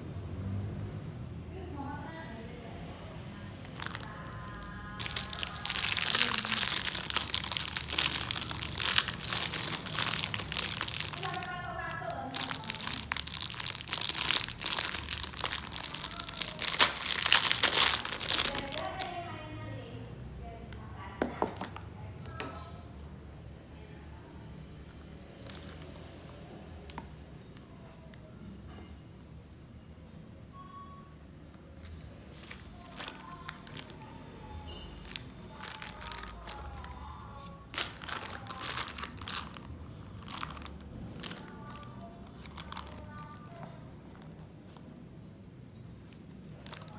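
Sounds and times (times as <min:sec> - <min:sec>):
crinkly packaging crackling: 0:03.5 - 0:19.3, 0:25.3 - 0:26.0, 0:31.8 - 0:45.0, 0:46.0 - 0:46.9.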